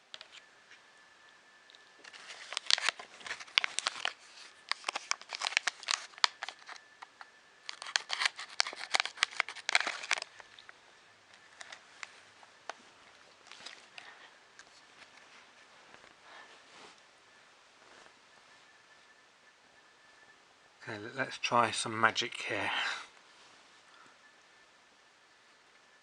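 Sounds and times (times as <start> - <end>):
plastic packaging crinkling: 1.7 - 16.5.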